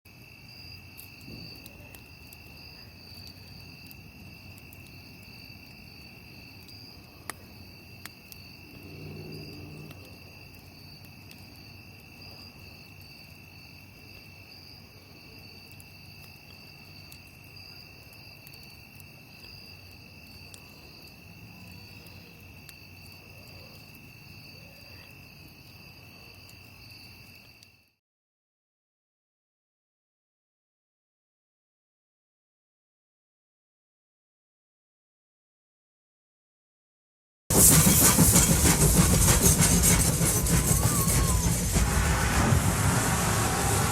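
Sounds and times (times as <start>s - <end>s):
crickets chirping: 0.1s - 28.0s.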